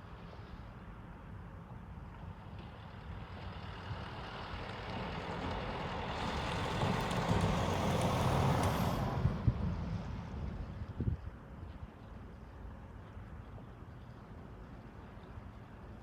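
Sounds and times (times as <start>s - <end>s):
vehicle passing by: 4.8s - 10.7s.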